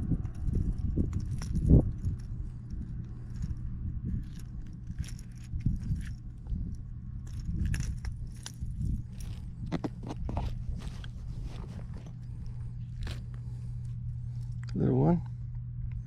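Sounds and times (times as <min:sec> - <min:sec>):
steady low hum: 0:00.0 - 0:16.0
fishing tackle jingling: 0:00.3 - 0:03.6, 0:04.2 - 0:10.0.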